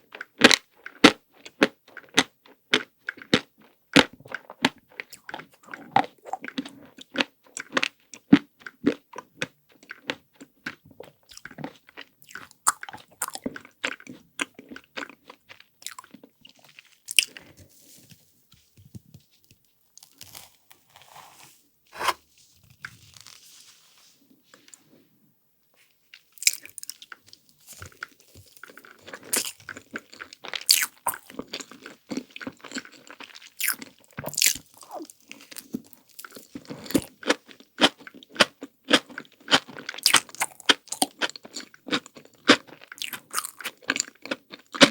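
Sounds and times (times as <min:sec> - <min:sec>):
crunching chocolate coating: 0:00.2 - 0:23.5, 0:26.1 - 0:44.9
wet chewing: 0:26.1 - 0:38.1.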